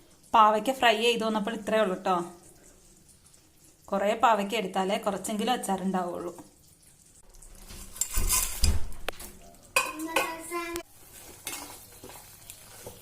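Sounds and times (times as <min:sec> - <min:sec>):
light sizzling: 0:00.0 - 0:13.0
metal spoon scraping and clinking on pan: 0:07.8 - 0:08.7, 0:11.1 - 0:13.0.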